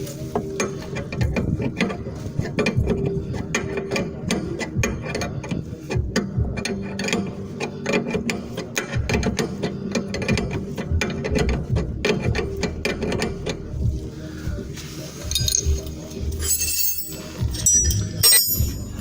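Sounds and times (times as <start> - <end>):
hand ratchet clicking: 15.2 - 19.0.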